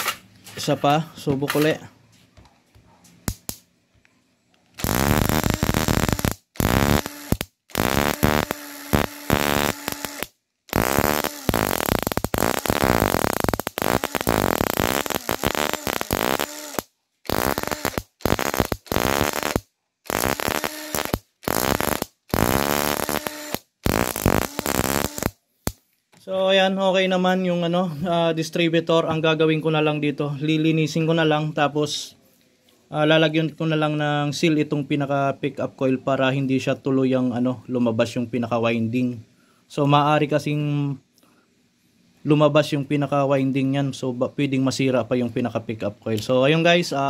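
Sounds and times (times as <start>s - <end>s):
electric sparks buzzing: 3.3s - 3.6s, 4.8s - 25.8s.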